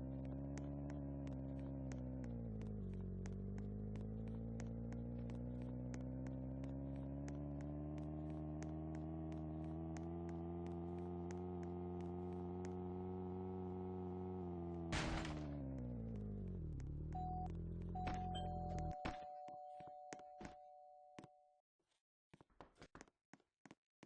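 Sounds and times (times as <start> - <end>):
regular ticking: 0.0 - 12.8, 15.7 - 20.2.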